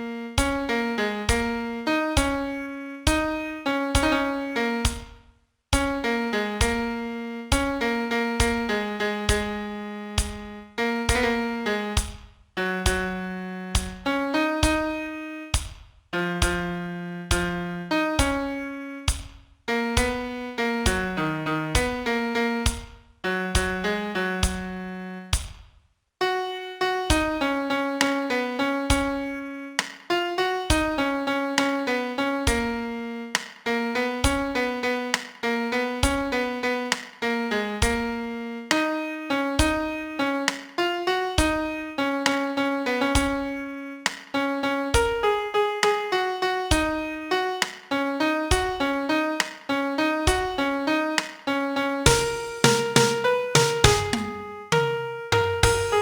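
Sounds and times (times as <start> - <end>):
piano melody: 0.0 - 5.0, 26.3 - 33.2, 33.8 - 56.0.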